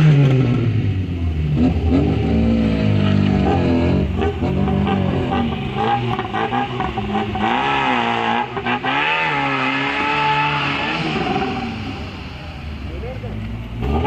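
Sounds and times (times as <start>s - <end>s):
car engine revving: 0.0s - 14.0s.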